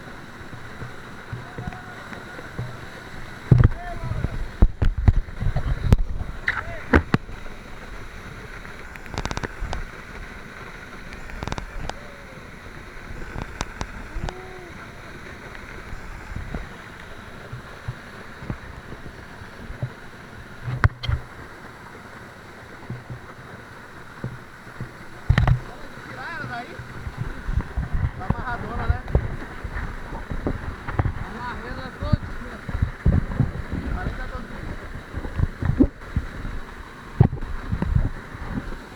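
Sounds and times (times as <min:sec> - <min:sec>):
waterfall rushing: 0:00.0 - 0:38.9
knocks and clicks near microphone: 0:03.5 - 0:07.4, 0:08.8 - 0:09.9, 0:20.6 - 0:21.3, 0:24.2 - 0:25.8, 0:26.8 - 0:31.3, 0:32.1 - 0:36.4, 0:37.2 - 0:38.7.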